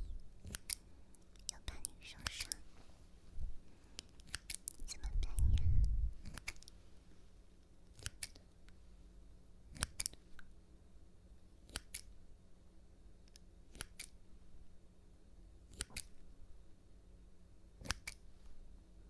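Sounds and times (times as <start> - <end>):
scissors snipping: 0.4 - 1.6, 2.2 - 2.6, 4.0 - 5.4, 6.2 - 6.8, 7.9 - 8.4, 9.8 - 10.2, 11.7 - 12.1, 13.7 - 14.2, 15.7 - 16.2, 17.8 - 18.2.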